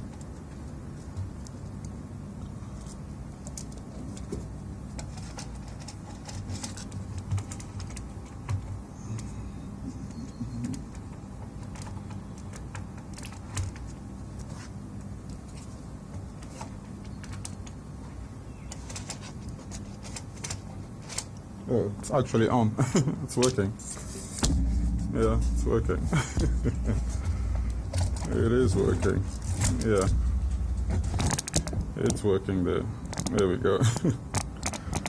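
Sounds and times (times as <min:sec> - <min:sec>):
steady low hum: 0:00.0 - 0:35.0
clicks of small plastic parts: 0:33.0 - 0:35.0.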